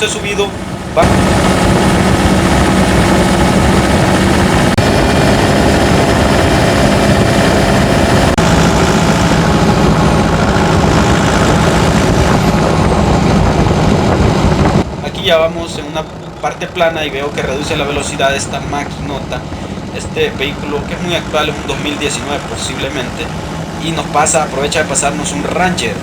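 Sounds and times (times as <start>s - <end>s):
diesel engine droning under load: 0.0s - 26.0s.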